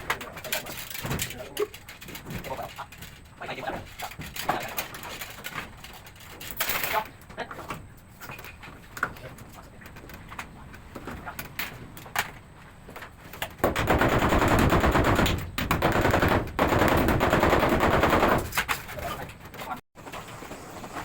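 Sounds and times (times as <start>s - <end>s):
scattered knocks: 13.6s - 18.8s.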